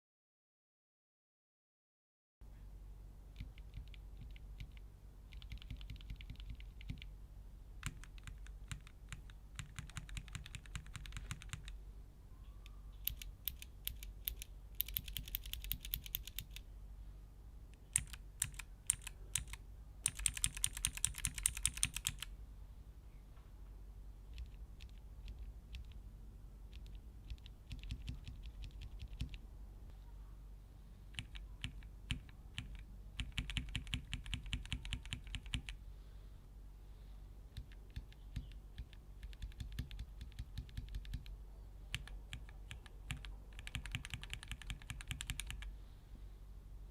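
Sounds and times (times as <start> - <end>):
mechanical keyboard key clicks: 13.0 - 16.6, 17.8 - 22.3, 26.7 - 29.4, 31.1 - 35.8, 41.9 - 45.7.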